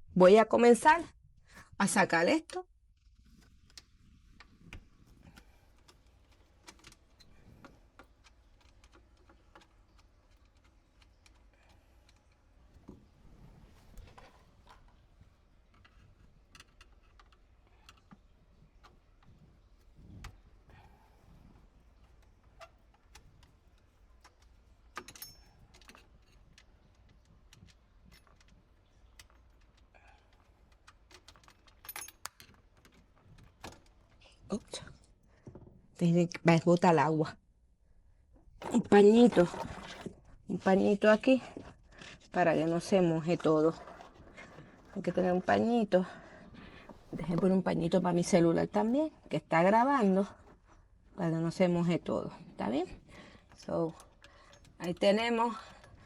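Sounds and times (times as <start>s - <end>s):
faint clicks and taps of tools: 2.5s - 13.1s, 13.9s - 35.8s, 53.0s - 56.0s
tools clicking and clinking: 23.0s - 34.1s.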